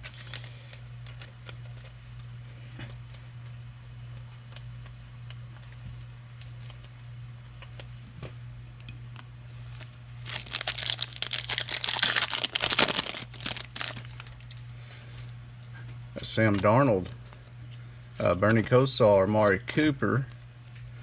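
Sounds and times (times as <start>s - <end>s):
foil wrapper crinkling and tearing: 0.0s - 2.0s, 10.2s - 14.6s.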